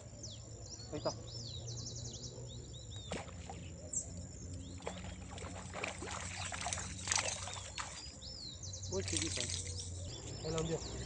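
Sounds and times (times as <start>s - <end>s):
birds chirping: 0.0s - 11.0s
water splashing: 4.8s - 8.2s, 8.9s - 10.0s.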